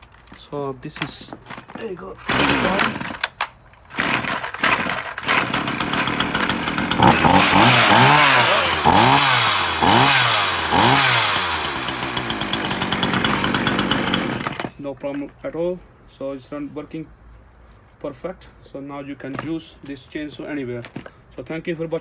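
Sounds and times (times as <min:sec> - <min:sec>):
chainsaw revving: 0:02.2 - 0:14.7.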